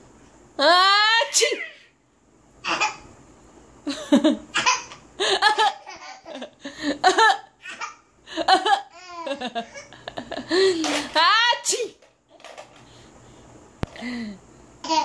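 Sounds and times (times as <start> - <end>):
baby laughing: 4.5 - 6.5, 8.8 - 10.1.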